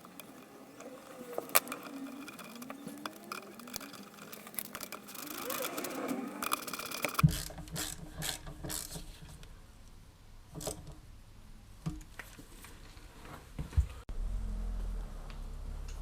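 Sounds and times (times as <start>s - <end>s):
hand tools clicking and knocking: 0.0s - 9.1s
steady low hum: 14.1s - 16.0s.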